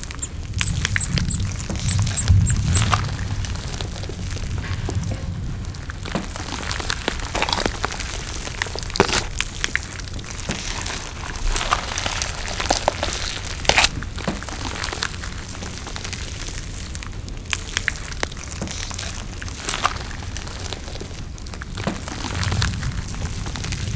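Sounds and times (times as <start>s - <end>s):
sharp clicks and crackles: 0.0s - 16.2s
chewing and crunching food: 0.0s - 23.9s.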